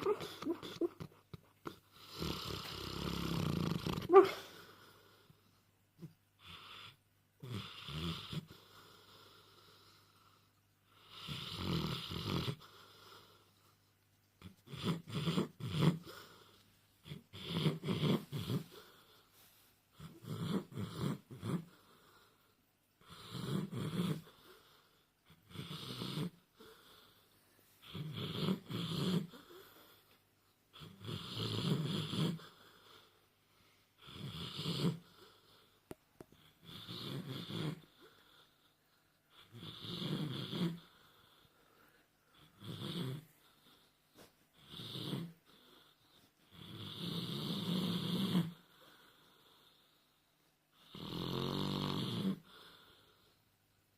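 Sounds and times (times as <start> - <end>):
dog snoring: 1.6 - 5.2, 6.0 - 13.5, 14.4 - 19.2, 19.9 - 22.4, 23.0 - 30.0, 30.7 - 33.1, 34.0 - 38.7, 39.3 - 50.1, 50.7 - 53.4.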